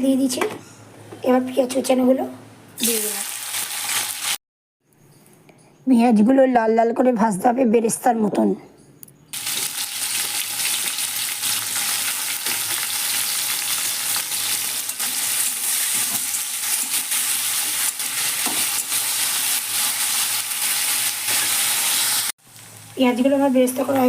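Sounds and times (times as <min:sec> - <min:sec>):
onions sizzling in hot oil: 0:02.8 - 0:04.4, 0:09.4 - 0:24.0.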